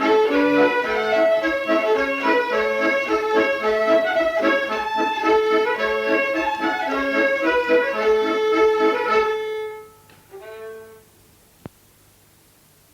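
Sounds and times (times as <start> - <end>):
accordion playing lively tune: 0.0 - 11.1
click: 11.6 - 11.8.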